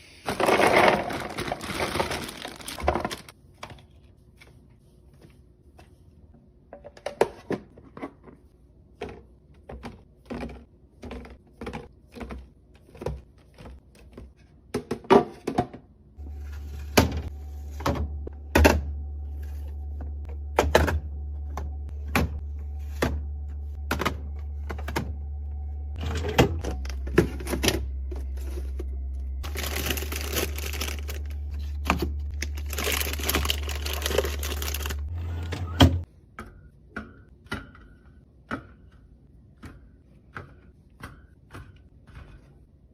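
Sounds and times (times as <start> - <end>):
steady low hum: 16.2 - 36.1.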